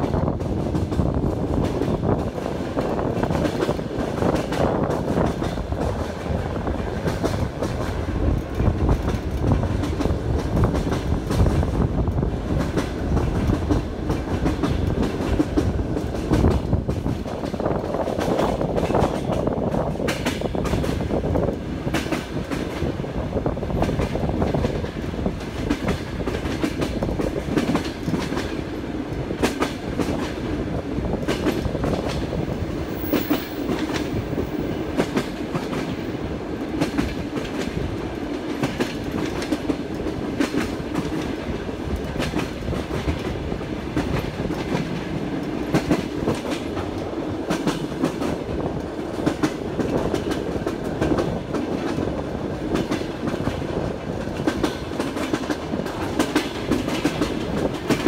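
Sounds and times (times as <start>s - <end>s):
train wheels clattering over rail joints: 0.0s - 23.0s, 23.7s - 58.0s.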